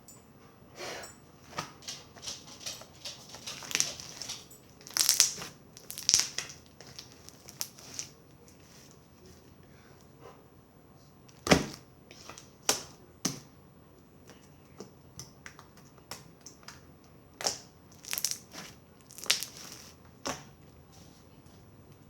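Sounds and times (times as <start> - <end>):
slime popping and clicking: 4.8 - 8.1, 17.4 - 19.7.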